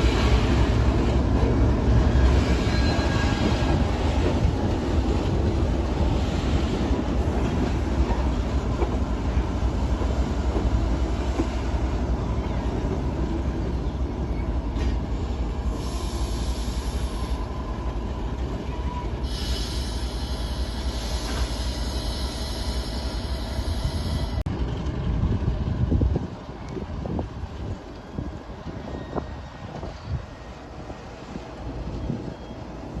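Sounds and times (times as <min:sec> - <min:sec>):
train wagons rumbling past: 0:00.0 - 0:33.0
high-pitched wheel squeal: 0:02.2 - 0:03.5.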